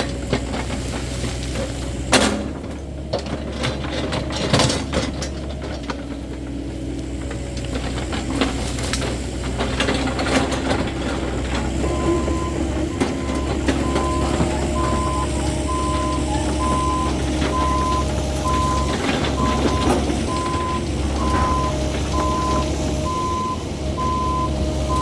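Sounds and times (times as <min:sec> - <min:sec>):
excavator diesel engine running: 0:00.0 - 0:25.0
travel alarm beeping: 0:11.7 - 0:25.0.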